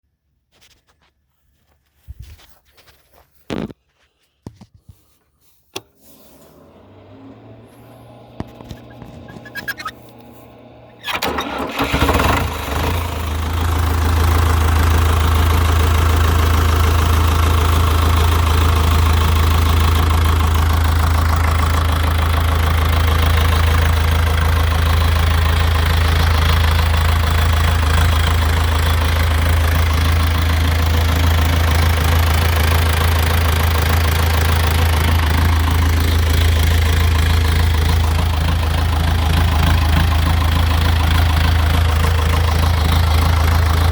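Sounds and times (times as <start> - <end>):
diesel engine idling: 6.4 - 43.9.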